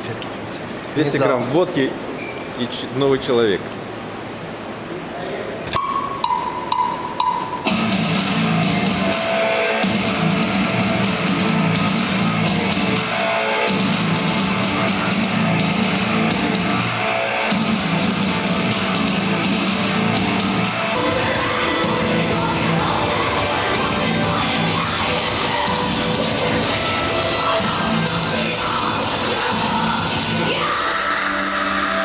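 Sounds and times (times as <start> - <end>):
short steady tone: 5.7 - 7.9
heavy metal music: 5.8 - 32.0.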